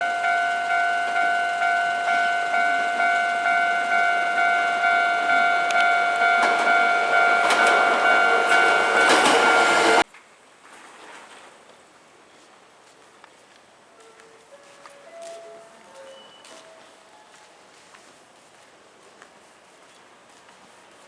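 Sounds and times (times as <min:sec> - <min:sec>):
level-crossing warning bell: 0:00.0 - 0:10.0, 0:14.0 - 0:17.8
train wheels clacking on rails: 0:00.0 - 0:10.0.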